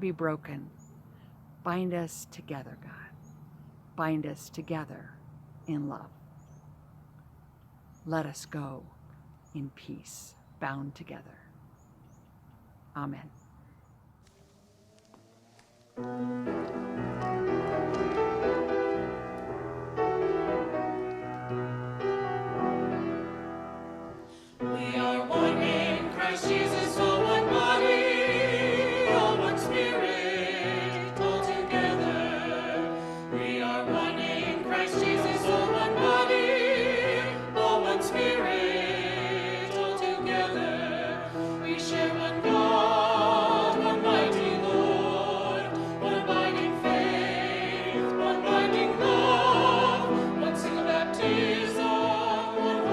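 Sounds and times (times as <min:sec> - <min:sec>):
choir singing with vibrato: 0:14.6 - 0:52.9
piano notes: 0:15.7 - 0:52.9.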